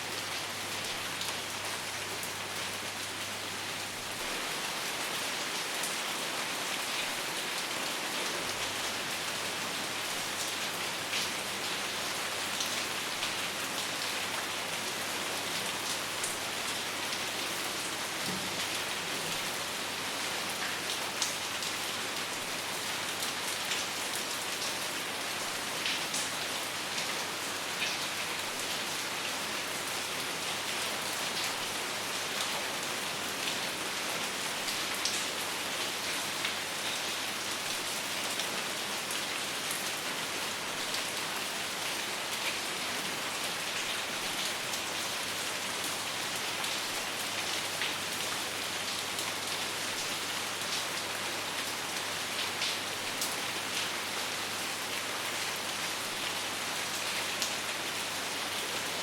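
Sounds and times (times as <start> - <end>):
rain falling: 0.0 - 59.0.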